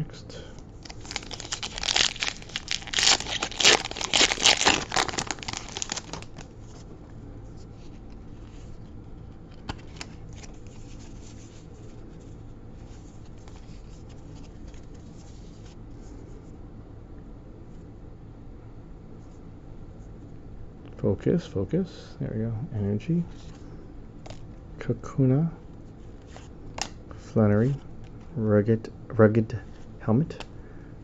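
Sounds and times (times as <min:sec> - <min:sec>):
cards rustling: 0:00.5 - 0:06.9, 0:07.8 - 0:15.8, 0:24.3 - 0:24.5, 0:26.1 - 0:28.3
foil wrapper tearing and crinkling: 0:00.7 - 0:06.5.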